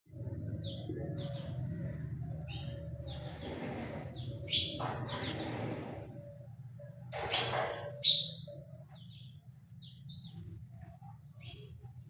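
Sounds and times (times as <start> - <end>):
nestling birds chirping: 0.5 - 10.4.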